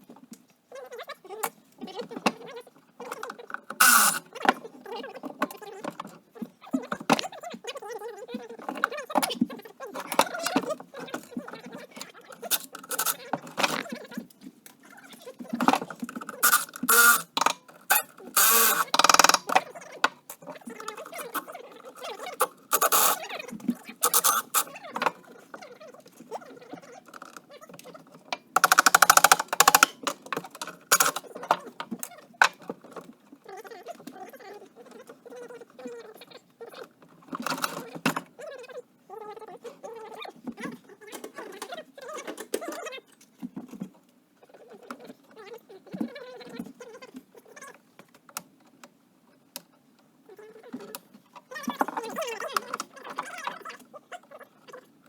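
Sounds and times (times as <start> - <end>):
sped-up hand tools clattering: 16.4 - 19.6, 28.6 - 31.2.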